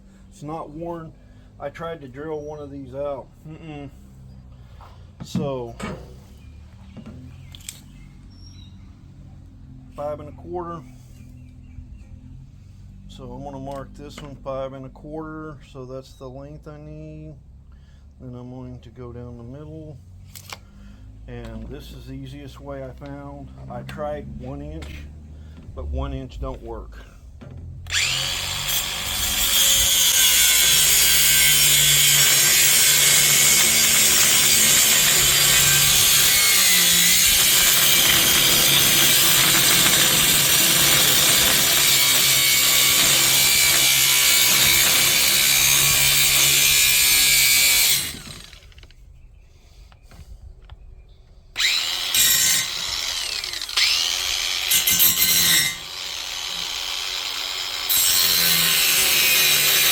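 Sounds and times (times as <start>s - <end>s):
power tool cutting metal conduit: 27.4s - 49.0s, 51.5s - 59.9s.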